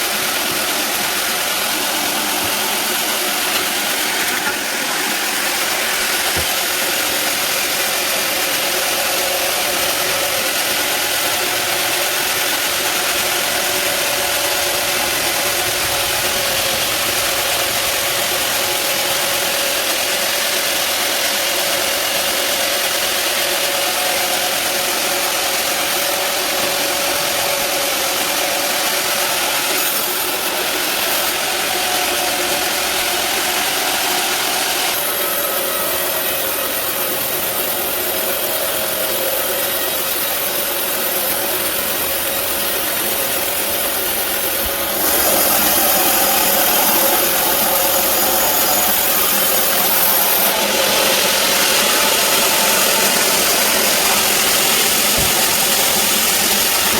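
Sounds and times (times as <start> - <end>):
bandsaw running with hum: 0.0 - 56.9.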